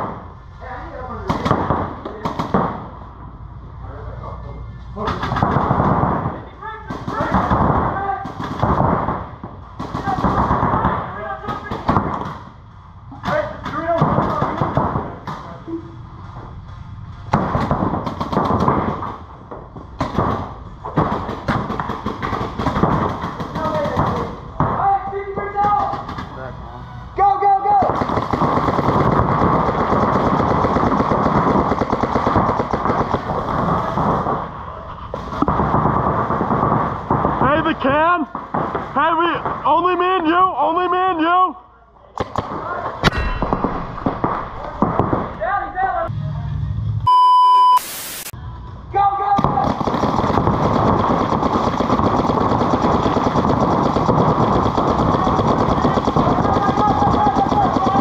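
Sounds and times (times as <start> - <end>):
paintball guns firing rapidly: 1.2 - 2.9, 5.0 - 12.5, 13.2 - 15.6, 17.3 - 19.4, 20.0 - 26.4, 27.7 - 40.0, 44.0 - 45.4, 49.3 - 58.0.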